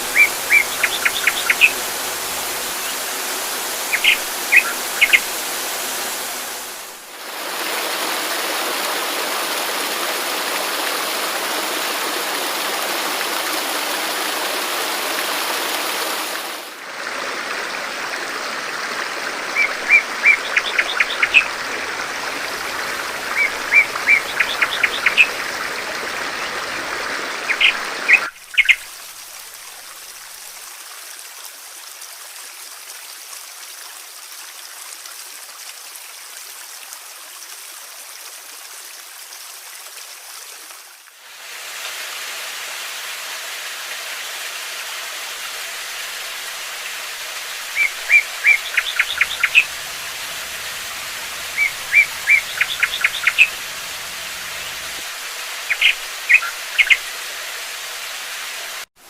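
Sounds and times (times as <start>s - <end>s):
small birds chirping: 0.0s - 6.9s, 19.6s - 26.7s, 27.5s - 28.8s, 47.6s - 57.2s
hissy water rush: 0.0s - 59.0s
stream water running: 0.0s - 59.0s.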